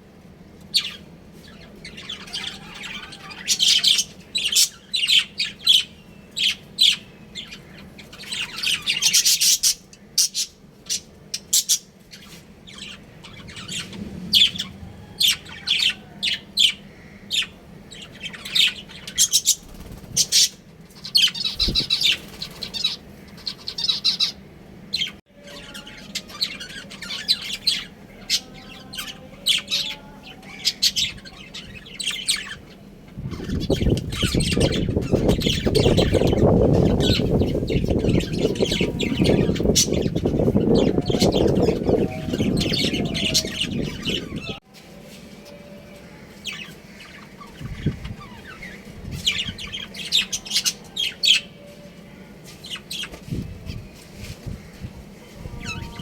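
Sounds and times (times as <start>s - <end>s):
budgerigars chirping and squawking: 0.7s - 44.6s, 46.2s - 51.6s, 52.7s - 56.0s.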